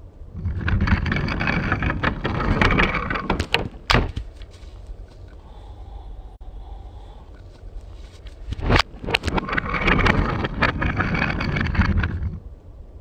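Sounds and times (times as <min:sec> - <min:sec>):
wooden toy trains rolling on track: 0:00.4 - 0:05.6, 0:07.0 - 0:12.4
sharp knocks: 0:00.5 - 0:05.2.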